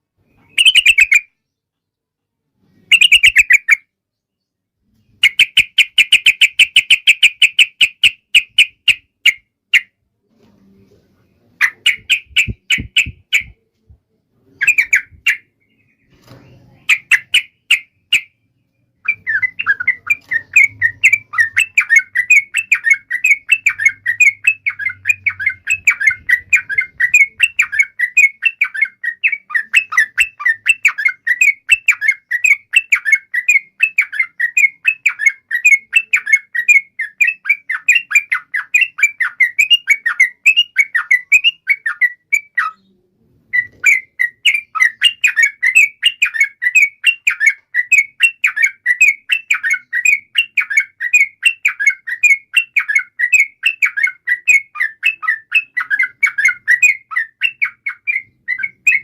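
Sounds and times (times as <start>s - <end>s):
bird singing rapid chirping notes: 0.2s - 1.8s, 2.9s - 10.0s, 11.6s - 13.6s, 14.5s - 59.0s.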